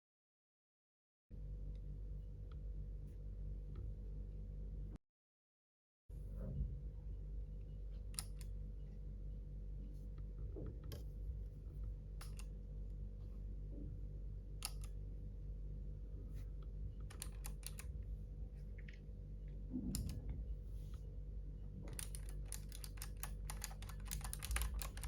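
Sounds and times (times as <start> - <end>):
low steady hum: 1.3 - 5.0, 6.1 - 25.0
clicky mechanical keyboard keys: 8.1 - 8.5, 12.2 - 12.5, 14.6 - 15.0, 17.0 - 17.9, 21.8 - 25.0.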